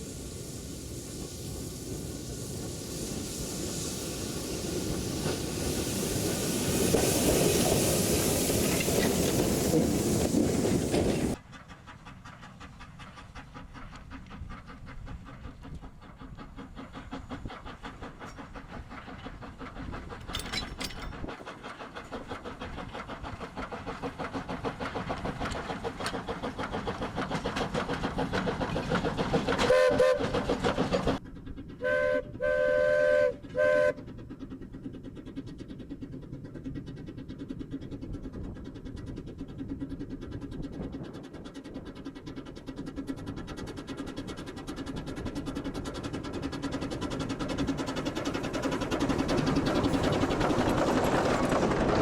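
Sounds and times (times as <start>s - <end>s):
steam locomotive exhaust beats: 0.0s - 52.0s
steam whistle blasts: 29.7s - 30.3s, 31.8s - 34.0s.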